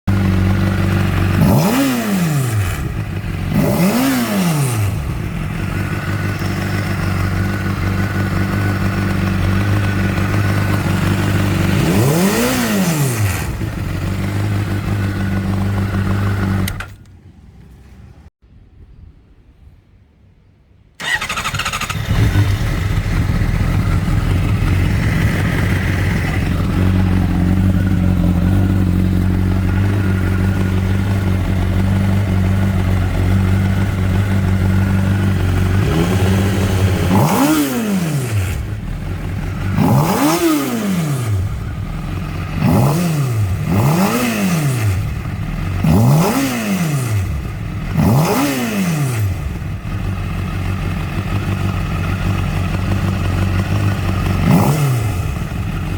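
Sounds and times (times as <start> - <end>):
motorcycle engine revving: 0.0 - 17.0, 21.0 - 55.9
motorcycle engine starting and idling: 0.1 - 18.3, 21.0 - 55.9.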